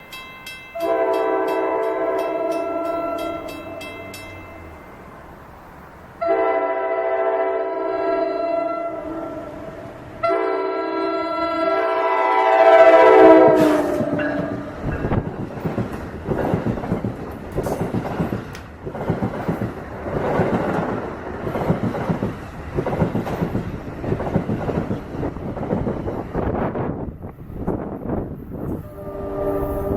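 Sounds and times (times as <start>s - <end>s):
train wheels clickety-clack: 0.0s - 4.6s, 12.4s - 28.9s
locomotive air horn blasts: 0.8s - 3.8s, 6.2s - 14.9s, 28.8s - 29.9s.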